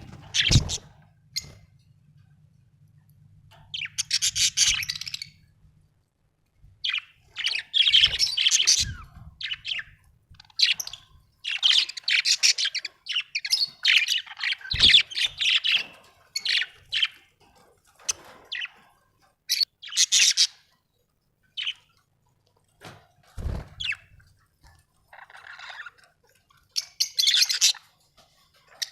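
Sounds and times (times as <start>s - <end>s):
budgerigars chirping: 3.7s - 5.4s, 6.8s - 17.2s, 19.5s - 20.7s, 23.8s - 24.1s, 25.1s - 26.0s, 26.8s - 27.9s.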